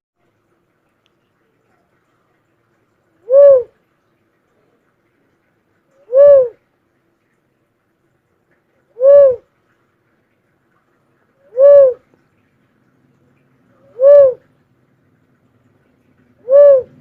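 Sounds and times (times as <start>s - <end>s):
bird hooting: 3.2s - 3.7s, 6.0s - 6.6s, 9.0s - 9.4s, 11.5s - 12.0s, 13.8s - 14.4s, 16.4s - 17.0s.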